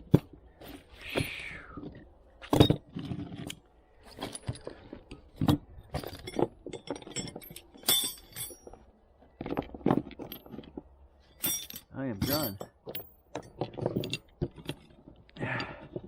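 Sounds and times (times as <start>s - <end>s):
metal tools clinking: 5.4s - 8.8s, 9.5s - 15.0s.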